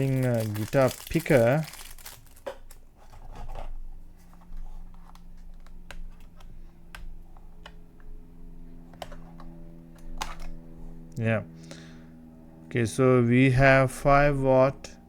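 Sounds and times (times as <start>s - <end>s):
low steady hum: 0.0s - 15.0s
plastic clicks and scratching: 4.3s - 7.8s.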